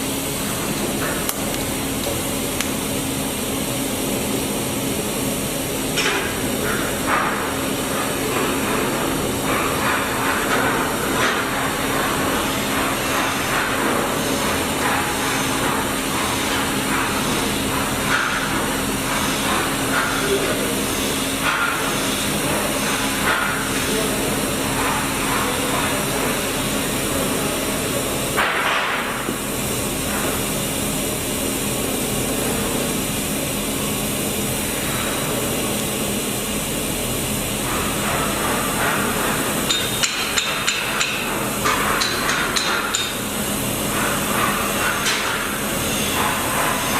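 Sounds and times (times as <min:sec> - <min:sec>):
welding arc crackling and hissing: 0:00.0 - 0:46.9.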